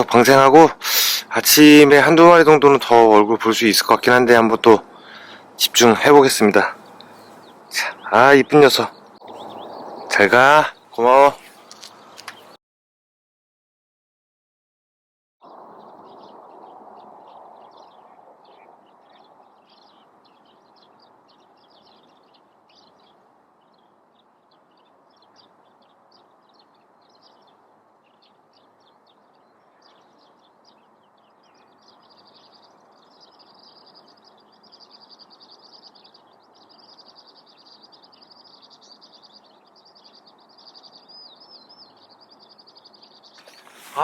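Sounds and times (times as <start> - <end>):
faint outdoor hush: 0.0 - 12.6, 37.6 - 44.0
small birds chirping: 0.0 - 12.6, 15.4 - 44.0
bird trilling song: 1.6 - 12.6, 15.4 - 44.0.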